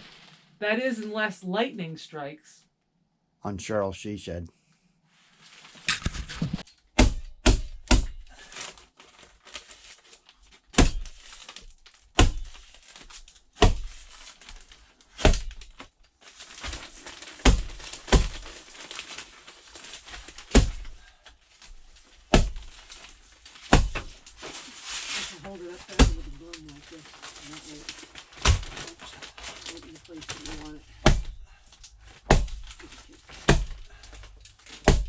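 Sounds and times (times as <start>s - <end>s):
sharp knocks and thuds: 5.9s - 8.3s, 10.7s - 11.4s, 12.2s - 12.7s, 13.6s - 14.1s, 15.2s - 15.7s, 16.7s - 18.5s, 20.3s - 21.0s, 22.3s - 22.8s, 23.6s - 24.2s, 25.9s - 26.4s, 28.3s - 28.9s, 30.4s - 31.5s, 32.2s - 33.9s, 34.8s - 35.0s.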